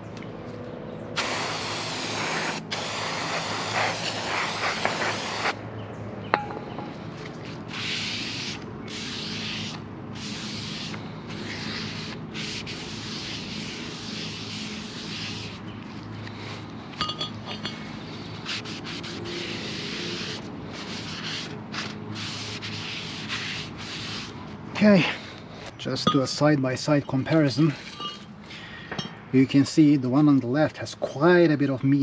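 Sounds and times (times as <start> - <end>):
aerosol spray hissing: 1.2 - 5.6, 7.7 - 15.5
light metallic clinks: 17.0 - 17.8.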